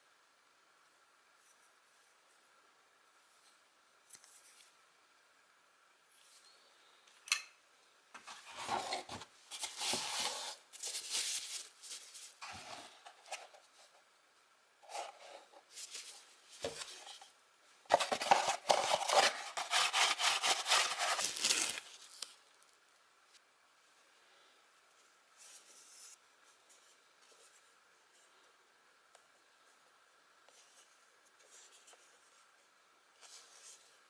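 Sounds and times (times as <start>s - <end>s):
packaging rubbing and scraping: 8.3s - 13.3s, 17.9s - 22.2s.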